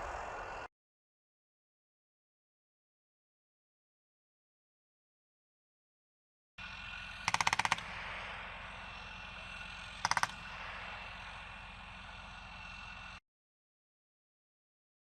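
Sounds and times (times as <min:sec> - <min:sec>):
low rumble: 0:00.0 - 0:00.7, 0:06.6 - 0:13.2
machine-gun fire: 0:07.2 - 0:08.1, 0:10.0 - 0:10.5.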